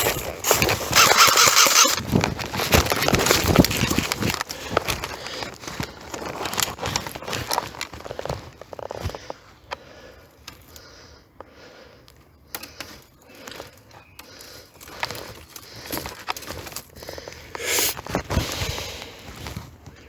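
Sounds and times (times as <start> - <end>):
footsteps through rustling undergrowth: 0.0 - 9.8, 12.9 - 20.0
person breathing: 8.9 - 20.0.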